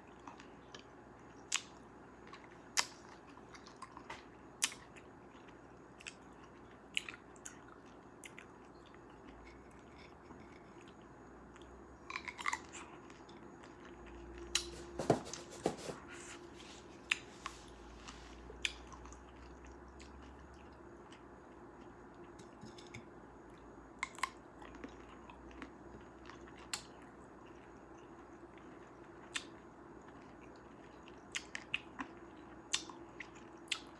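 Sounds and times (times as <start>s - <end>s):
person chewing cherries: 16.7s - 17.7s, 18.3s - 23.0s.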